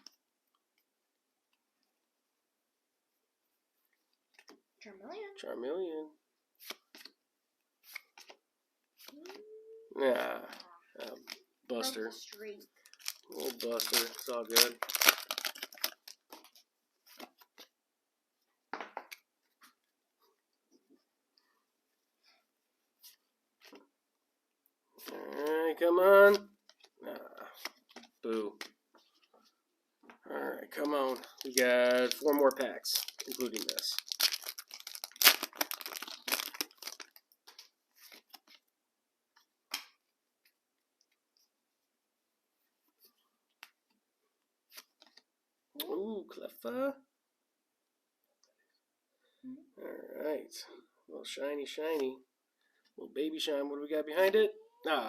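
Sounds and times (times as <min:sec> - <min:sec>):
foil wrapper tearing and crinkling: 0:12.9 - 0:16.2, 0:31.1 - 0:37.3.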